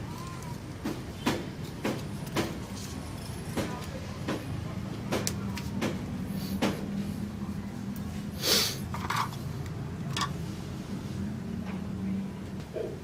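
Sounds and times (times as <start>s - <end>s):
short hiss: 8.4s - 8.8s.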